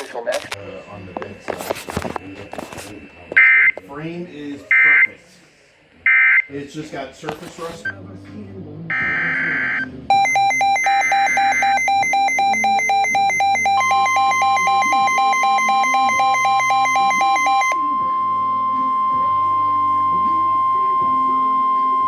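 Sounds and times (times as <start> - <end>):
electronic alarm beeping: 4.7 - 5.1, 8.9 - 22.0
digital header tones: 8.9 - 22.0
steady warning tone: 8.9 - 22.0.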